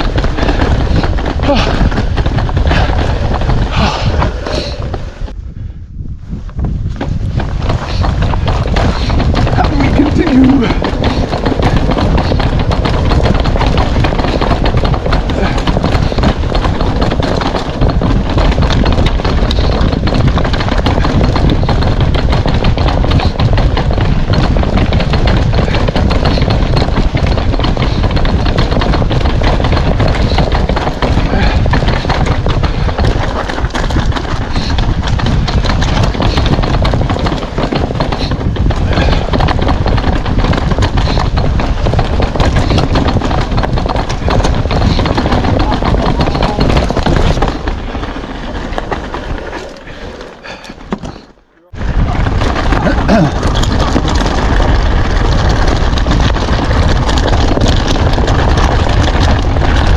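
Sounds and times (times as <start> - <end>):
mountain bike rattling on rocks: 0.0 - 5.4, 6.0 - 59.9
wind buffeting microphone: 0.0 - 59.9.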